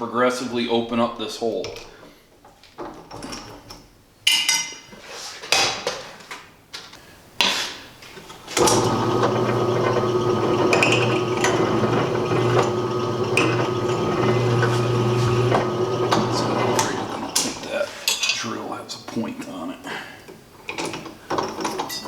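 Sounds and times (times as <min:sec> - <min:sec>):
drill press motor humming: 0:08.6 - 0:17.6.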